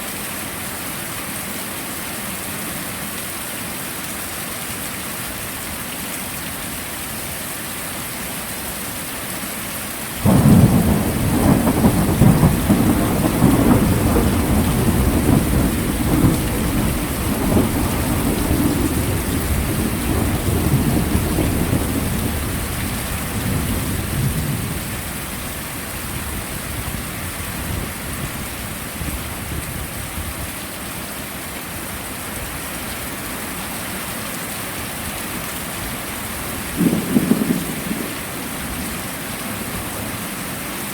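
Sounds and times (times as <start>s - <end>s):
heavy rain: 0.0s - 40.9s
thunder rumbling: 10.2s - 25.3s, 36.6s - 39.8s.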